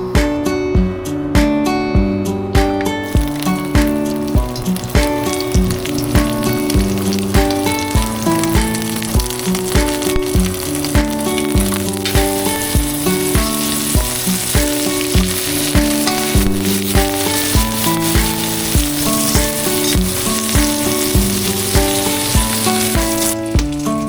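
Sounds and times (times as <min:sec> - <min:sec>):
background music with a beat: 0:00.0 - 0:24.0
food sizzling in a pan: 0:03.0 - 0:24.0.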